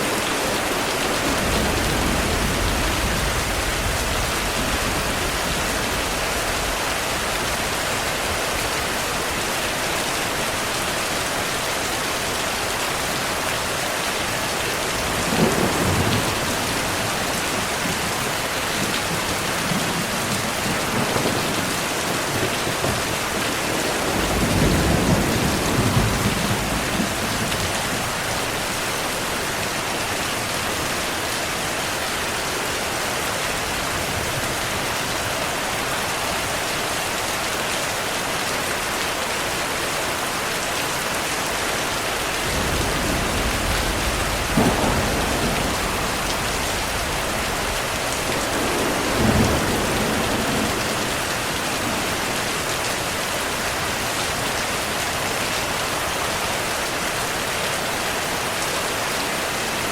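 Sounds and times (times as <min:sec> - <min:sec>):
steady rain falling: 0:00.0 - 0:59.9
low rolls of thunder: 0:00.2 - 0:07.7, 0:15.0 - 0:28.2, 0:42.4 - 0:52.5.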